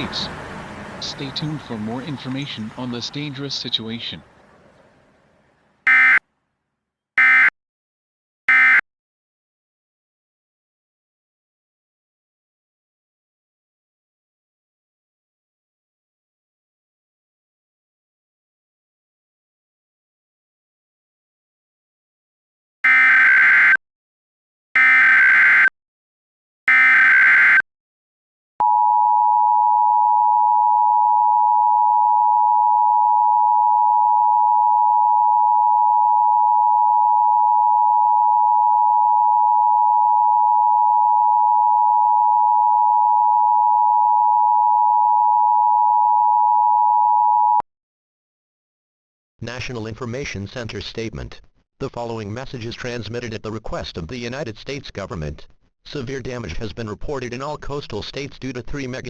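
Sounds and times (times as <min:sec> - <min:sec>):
data tone bursts: 0:05.9 - 0:06.2, 0:07.2 - 0:07.5, 0:08.5 - 0:08.8, 0:22.8 - 0:23.8, 0:24.8 - 0:25.7, 0:26.7 - 0:27.6
two-tone attention signal: 0:05.9 - 0:06.2, 0:07.2 - 0:07.5, 0:08.5 - 0:08.8, 0:22.8 - 0:23.8, 0:24.8 - 0:25.7, 0:26.7 - 0:27.6.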